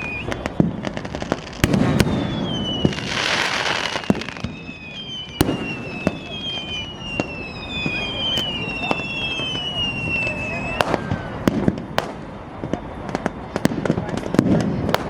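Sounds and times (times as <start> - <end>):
falling high whistles: 0.0 - 11.4
fireworks hissing burst: 0.0 - 12.5
firecracker bangs: 0.0 - 15.0.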